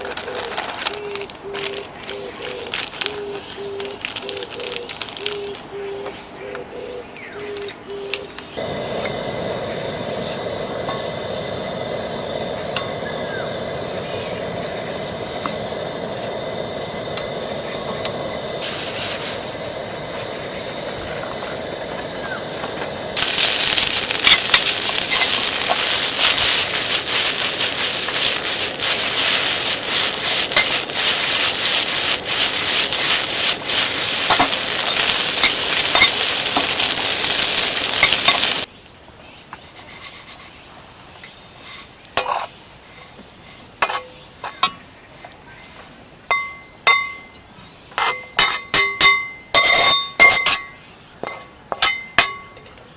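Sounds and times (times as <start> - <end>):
food sizzling in a hot pan: 8.6 - 38.7
steady hum: 8.6 - 38.7.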